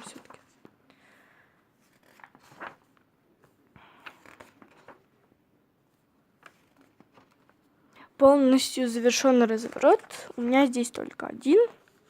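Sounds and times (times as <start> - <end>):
paper pages rustling: 0.0 - 0.8, 1.8 - 5.2, 5.9 - 7.7, 9.1 - 12.0.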